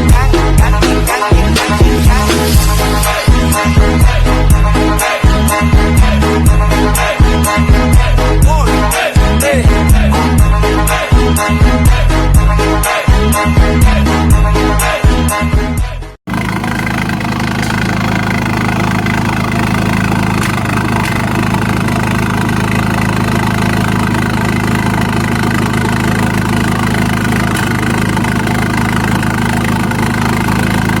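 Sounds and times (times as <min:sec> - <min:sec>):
car engine idling: 0:16.3 - 0:31.0.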